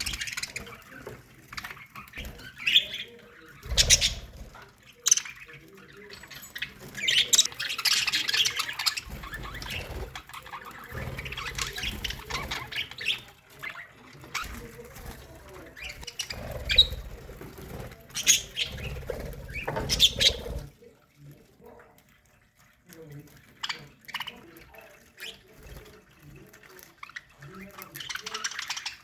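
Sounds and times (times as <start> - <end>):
budgerigars chattering and chirping: 0.0 - 20.7, 23.5 - 29.0
wings flapping: 3.5 - 20.8.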